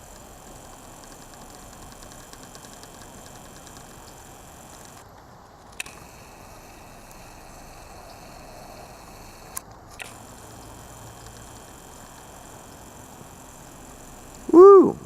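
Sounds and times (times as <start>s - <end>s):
faint hiss and hum: 0.0s - 15.0s
sharp click: 5.8s - 6.1s, 9.5s - 10.5s.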